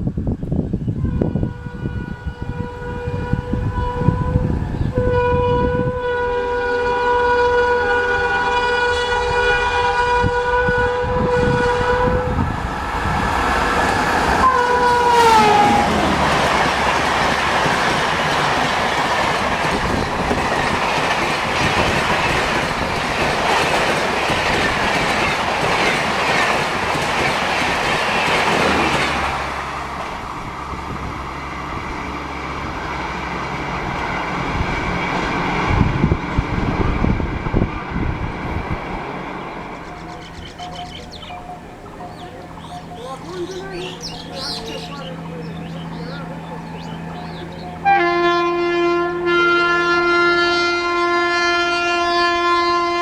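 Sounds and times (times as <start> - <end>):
locomotive horn: 0.9 - 18.6, 40.6 - 53.0
train wheels clattering on rails: 12.4 - 31.0, 31.7 - 47.8.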